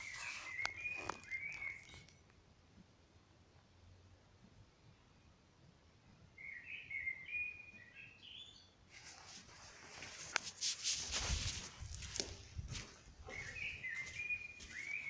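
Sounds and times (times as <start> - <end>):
songbird warbling: 0.0 - 2.1
rustling crackling noise: 0.0 - 2.2, 8.9 - 13.4.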